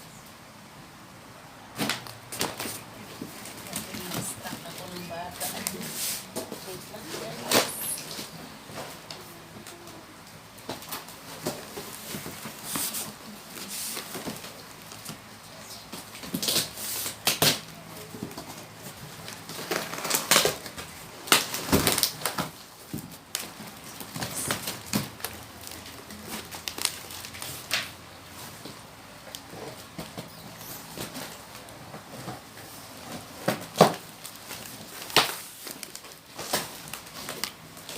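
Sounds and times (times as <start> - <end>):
packaging rustling and tearing: 1.8 - 37.9.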